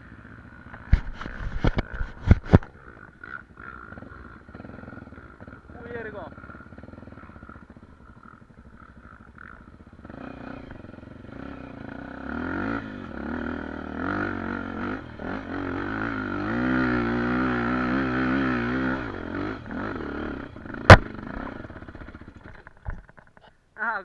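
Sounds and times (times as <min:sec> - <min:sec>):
dirt bike engine revving: 0:00.0 - 0:22.8
sharp loud knock: 0:20.8 - 0:21.1.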